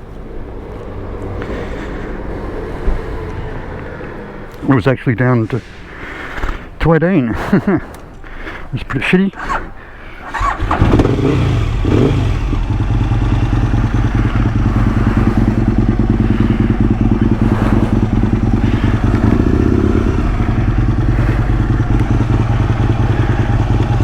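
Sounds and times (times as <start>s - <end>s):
motorcycle engine idling: 10.2s - 24.0s.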